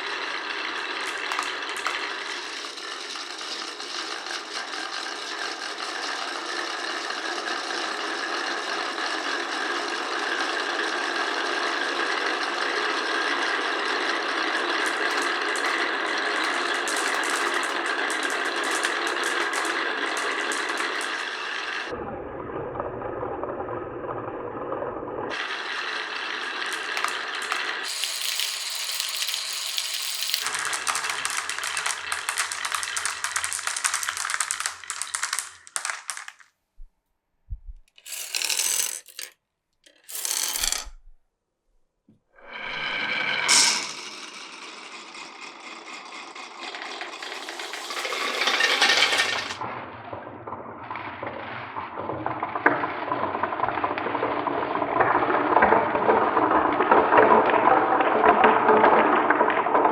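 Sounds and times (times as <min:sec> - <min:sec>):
marbles rolling on wooden run: 0:00.0 - 0:22.0, 0:25.3 - 0:36.5, 0:37.9 - 0:41.2, 0:42.6 - 0:49.7.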